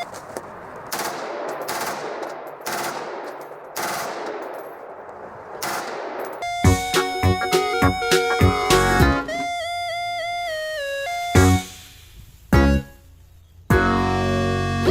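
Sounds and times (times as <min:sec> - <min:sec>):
rapid machine-gun fire: 0:00.7 - 0:04.6, 0:05.4 - 0:06.3.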